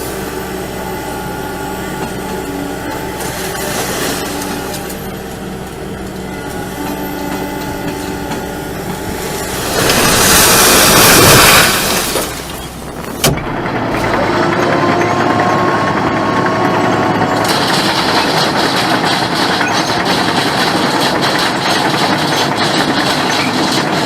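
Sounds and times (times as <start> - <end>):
heavy machine engine running: 0.0 - 24.0
loud rush of noise: 9.2 - 14.4.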